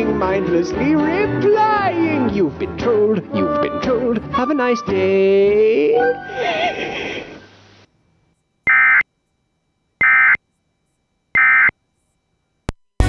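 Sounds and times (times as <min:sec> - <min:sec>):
digital data tone bursts: 0:08.6 - 0:09.1, 0:10.0 - 0:10.4, 0:11.4 - 0:11.8.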